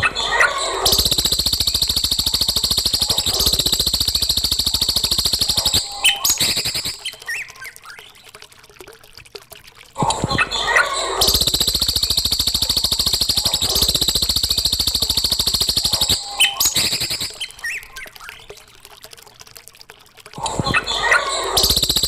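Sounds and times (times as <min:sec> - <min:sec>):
songbird rattling trill: 0:00.8 - 0:07.8, 0:11.2 - 0:18.4, 0:21.6 - 0:22.0
bird chirps and whistles: 0:00.9 - 0:07.5, 0:11.2 - 0:18.0.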